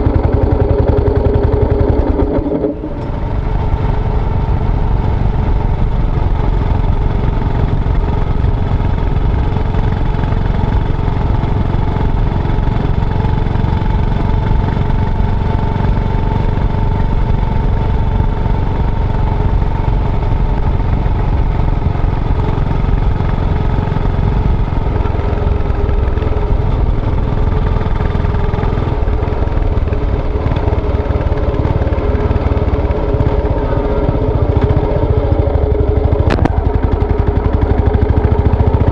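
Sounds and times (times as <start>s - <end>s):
motorcycle engine rumbling: 0.0s - 38.9s.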